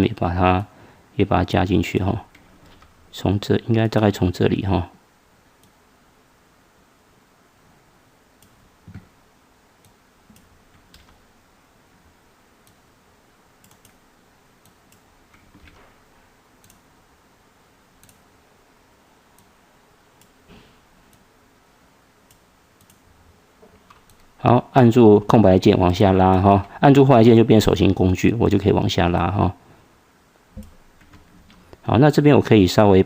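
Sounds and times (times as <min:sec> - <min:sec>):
computer mouse clicks: 0:08.4 - 0:09.1, 0:09.8 - 0:11.2, 0:13.6 - 0:14.0, 0:14.6 - 0:15.8, 0:16.6 - 0:16.8, 0:18.0 - 0:18.3, 0:22.2 - 0:23.0, 0:23.8 - 0:24.3.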